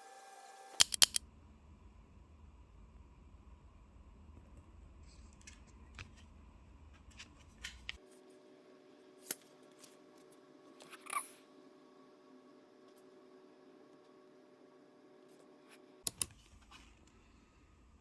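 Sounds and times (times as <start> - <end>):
faint steady hum: 0.0 - 18.0
small objects clicking and tapping: 0.8 - 1.2.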